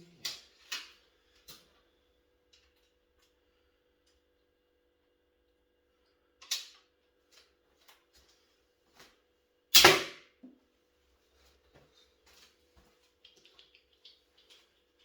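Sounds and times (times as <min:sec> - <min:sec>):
crossbow firing snap: 0:09.8 - 0:10.2.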